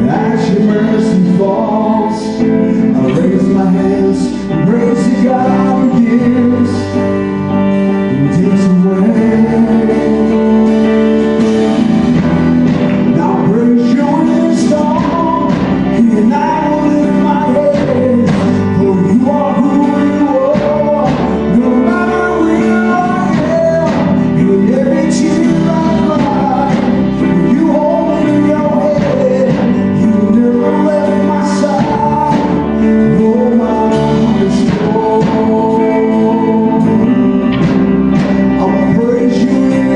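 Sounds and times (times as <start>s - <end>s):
instrumental chords: 0.0s - 39.9s
voices singing: 12.6s - 39.9s.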